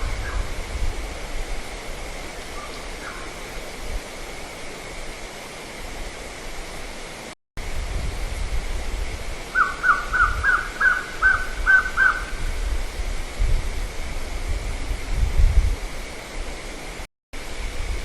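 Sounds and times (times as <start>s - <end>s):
recording hiss: 0.0s - 18.0s.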